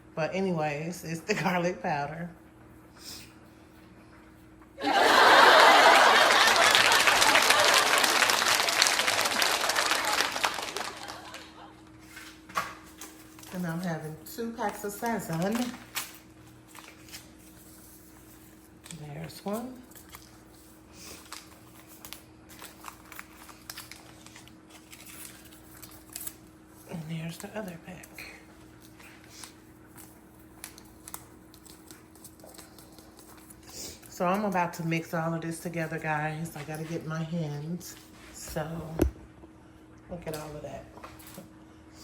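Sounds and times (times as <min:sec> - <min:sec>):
applause: 0:05.0 - 0:11.7
paper packet crinkling and tearing: 0:07.1 - 0:11.5, 0:14.7 - 0:20.5, 0:21.1 - 0:26.5, 0:28.8 - 0:33.7.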